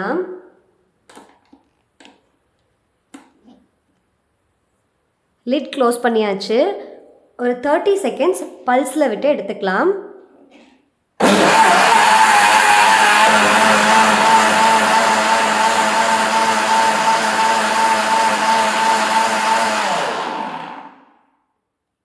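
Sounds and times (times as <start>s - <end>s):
mixer grinder motor whining: 11.2s - 21.2s.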